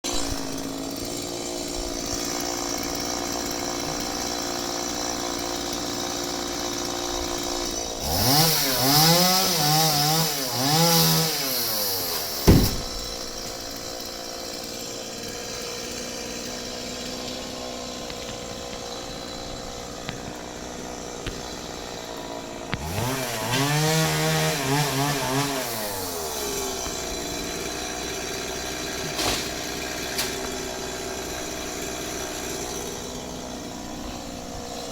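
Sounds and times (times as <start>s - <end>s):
chainsaw idling and revving: 0.0s - 34.9s
sharp crack: 12.1s - 14.2s.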